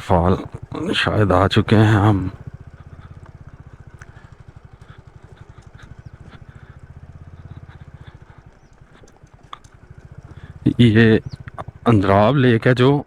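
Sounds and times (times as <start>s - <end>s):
motorcycle engine idling: 0.0s - 13.0s.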